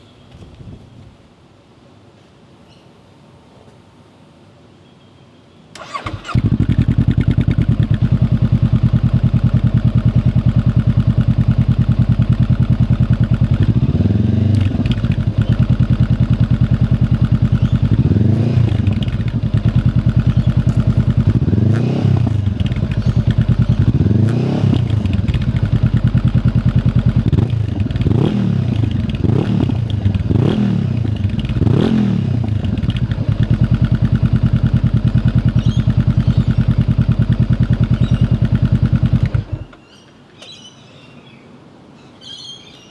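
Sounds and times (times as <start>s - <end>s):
engine revving throttle blips: 5.8s - 39.8s
motorcycle engine idling: 5.8s - 39.8s.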